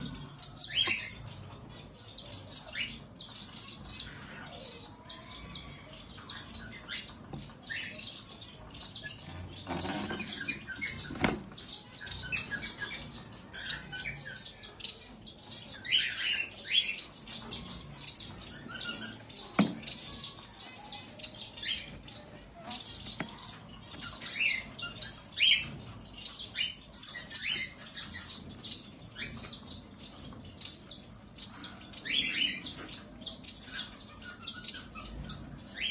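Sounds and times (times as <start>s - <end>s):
baby parrots chirping: 0.0s - 35.9s.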